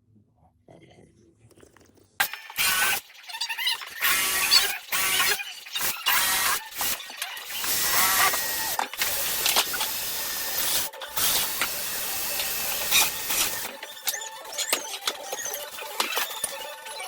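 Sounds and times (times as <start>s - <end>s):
power tool running: 2.2s - 3.1s, 3.8s - 13.8s.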